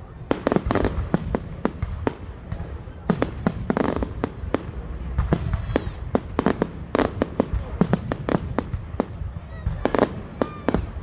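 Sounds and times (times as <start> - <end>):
fireworks bangs and crackling: 0.0 - 11.0
firework whistling: 2.7 - 11.0.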